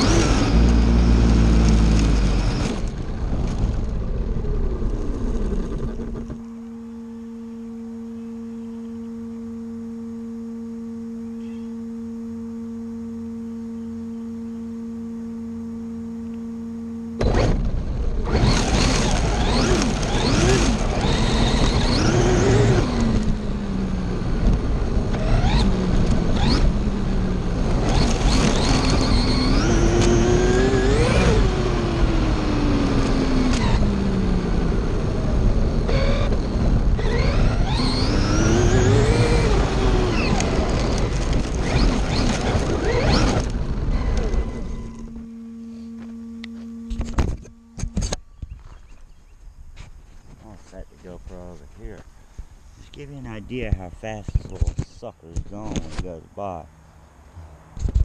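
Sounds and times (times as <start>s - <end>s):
rc car electric motor whining: 0.0s - 3.0s, 18.2s - 48.2s
steady low hum: 0.0s - 58.0s.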